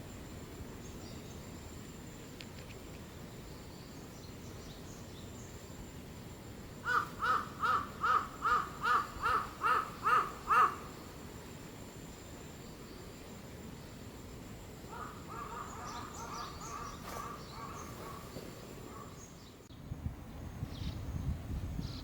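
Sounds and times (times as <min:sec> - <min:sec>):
bird calling: 0:06.8 - 0:11.3, 0:14.9 - 0:19.7.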